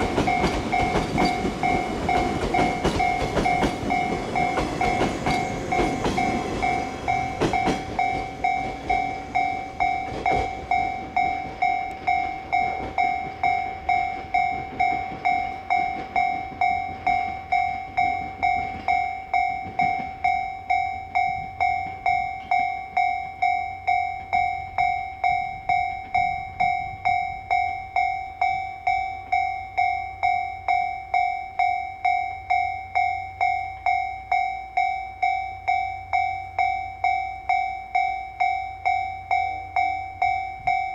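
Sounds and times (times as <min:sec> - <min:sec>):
train wheels clacking over rails: 0:00.0 - 0:19.0
level crossing bell ringing: 0:00.0 - 0:40.9.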